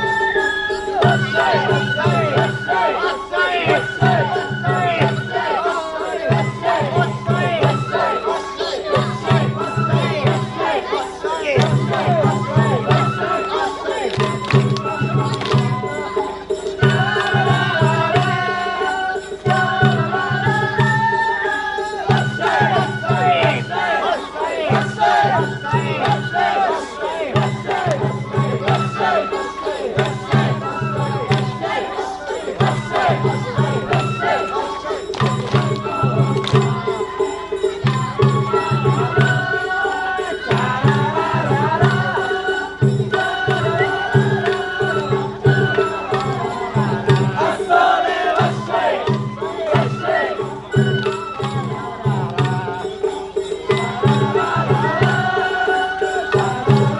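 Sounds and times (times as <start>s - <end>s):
high bamboo flute melody: 0.0s - 56.9s
deep taiko drums beating: 3.6s - 8.1s, 8.8s - 10.8s, 11.4s - 13.5s, 22.0s - 24.0s, 24.6s - 26.6s, 27.2s - 29.3s, 29.9s - 31.8s, 32.5s - 34.5s, 35.2s - 36.9s, 40.4s - 52.8s.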